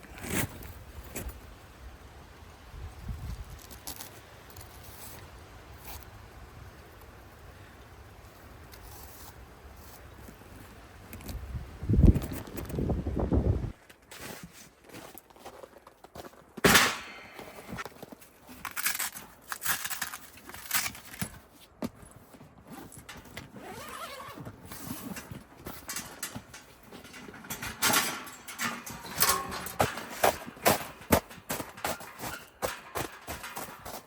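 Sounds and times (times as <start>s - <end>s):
rustling: 13.7s - 34.0s
irregular knocks and clatter: 24.6s - 34.0s.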